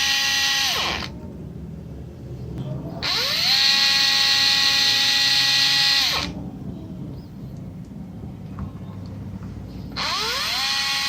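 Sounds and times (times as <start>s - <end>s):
electric motor tool whining: 3.0s - 6.4s, 10.0s - 11.0s.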